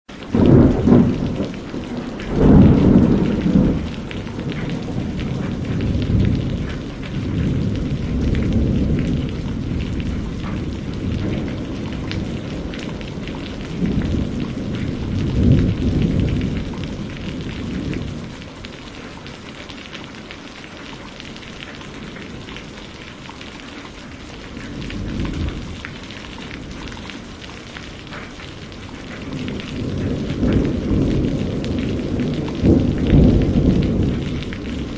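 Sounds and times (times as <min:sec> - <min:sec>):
steady rain: 0:00.1 - 0:34.9
thunder rumbling: 0:00.2 - 0:19.8, 0:21.4 - 0:34.9.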